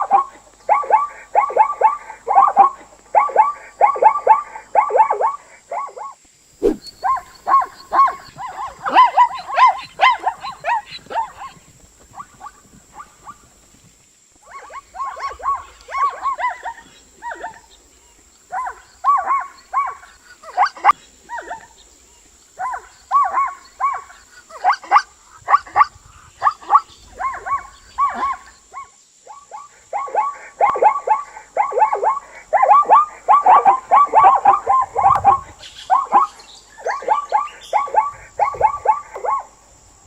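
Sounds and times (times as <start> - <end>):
animal making short pitched calls: 6.6 - 11.4.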